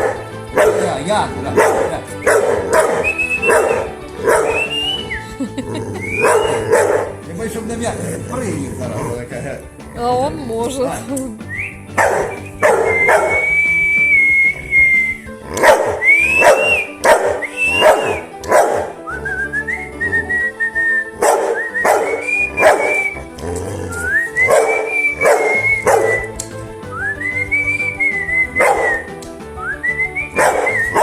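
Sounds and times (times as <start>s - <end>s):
dog howling: 0.0s - 7.2s, 11.9s - 27.2s, 27.9s - 29.2s, 30.2s - 31.0s
man whistling: 1.6s - 5.4s, 6.0s - 7.2s, 11.4s - 31.0s.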